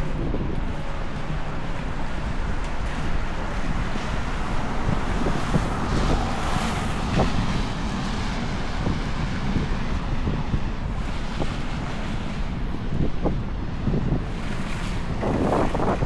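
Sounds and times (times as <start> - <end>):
city street traffic: 0.0 - 16.0
wind rumbling on microphone: 0.0 - 16.0
vehicle passing: 3.6 - 12.5.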